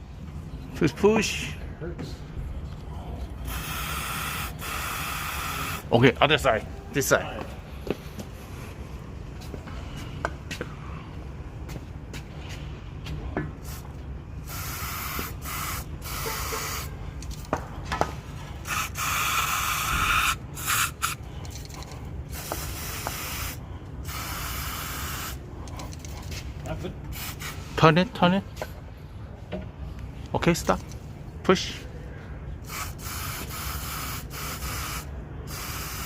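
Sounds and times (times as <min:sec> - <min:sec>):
steady low hum: 0:00.0 - 0:36.0
aerosol can spraying: 0:03.5 - 0:05.8, 0:14.4 - 0:16.9, 0:18.6 - 0:21.2, 0:22.3 - 0:25.4, 0:27.1 - 0:27.7, 0:32.7 - 0:36.0.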